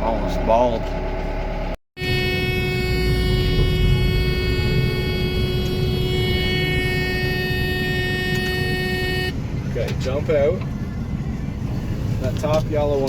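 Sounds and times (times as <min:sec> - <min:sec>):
farm machinery engine rumble: 0:00.0 - 0:09.3
high machine whine: 0:02.0 - 0:09.3.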